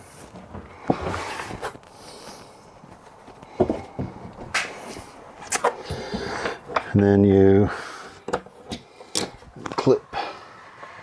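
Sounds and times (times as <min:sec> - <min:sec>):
cover rubbing scrape: 0:00.0 - 0:01.8.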